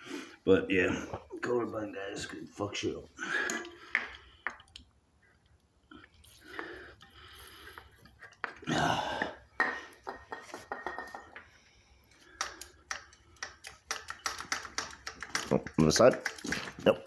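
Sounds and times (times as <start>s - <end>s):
metallic clinks and clicks: 6.0s - 8.7s, 12.1s - 17.0s.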